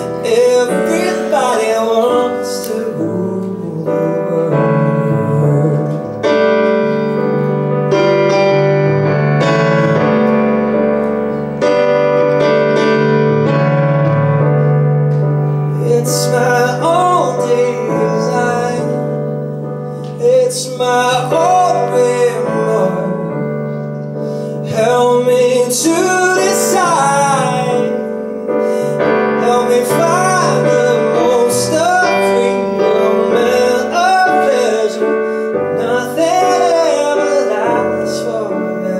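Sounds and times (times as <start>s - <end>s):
person singing: 0.0s - 8.1s, 15.5s - 28.3s, 29.0s - 38.9s
piano chords: 0.0s - 38.9s.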